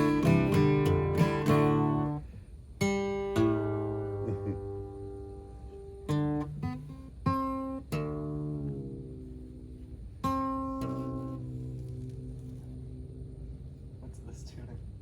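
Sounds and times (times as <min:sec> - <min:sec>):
acoustic guitar strings plucked: 0:00.0 - 0:13.1.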